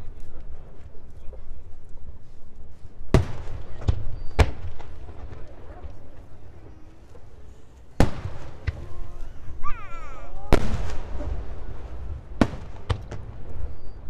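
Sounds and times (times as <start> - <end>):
firework bangs: 3.1 - 14.0
person exclaiming: 8.8 - 10.7.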